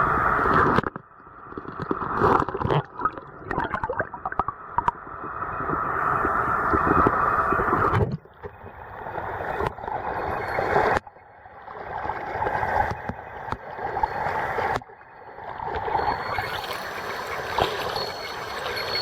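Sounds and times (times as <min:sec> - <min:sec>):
stream water rushing and gurgling: 0:15.6 - 0:19.0.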